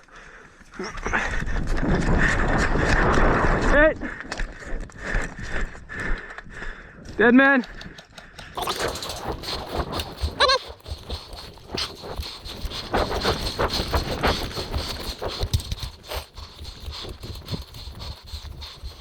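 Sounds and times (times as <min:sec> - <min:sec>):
footsteps: 0:04.1 - 0:19.0
gear rustling: 0:08.6 - 0:19.0.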